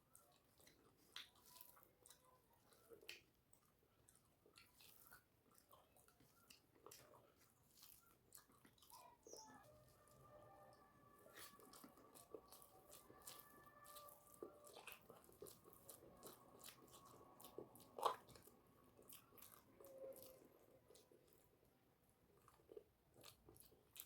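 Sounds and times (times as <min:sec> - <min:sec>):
person chewing and crunching food: 0:00.0 - 0:24.0.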